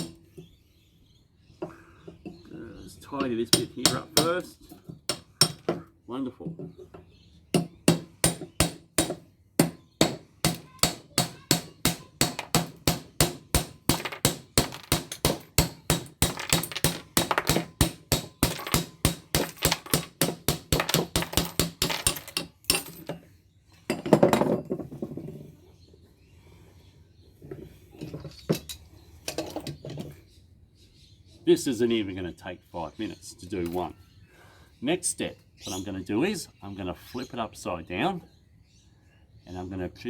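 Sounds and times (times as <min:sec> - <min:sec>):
hammer striking chisel on steel: 0:07.6 - 0:23.0.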